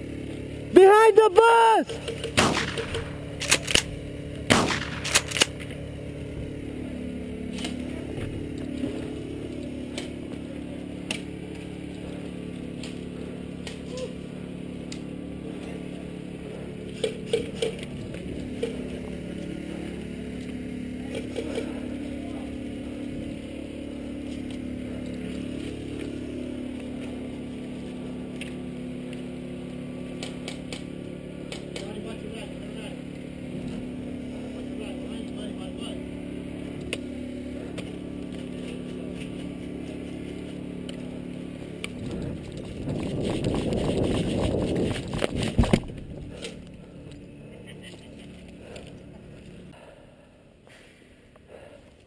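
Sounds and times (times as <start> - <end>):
steady low hum: 0.0 - 52.0
airsoft guns firing: 1.9 - 5.6.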